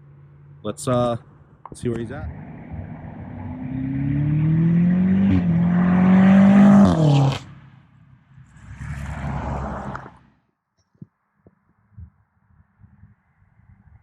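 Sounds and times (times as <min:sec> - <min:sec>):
car engine pulling hard: 0:01.9 - 0:07.7.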